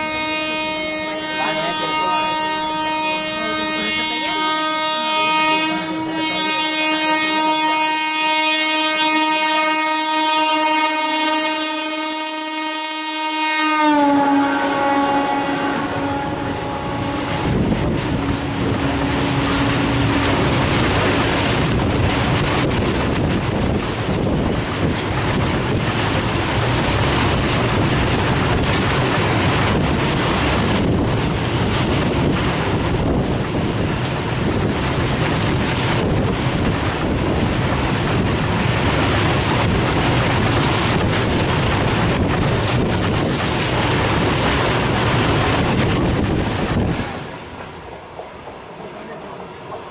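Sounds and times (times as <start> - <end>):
train rushing past: 0.0 - 12.2, 13.2 - 49.9
wind buffeting microphone: 14.4 - 48.3.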